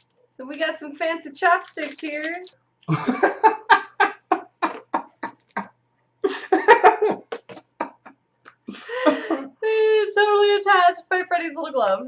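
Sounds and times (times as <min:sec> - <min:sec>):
laughter in short bursts: 0:02.9 - 0:05.3, 0:06.3 - 0:08.1.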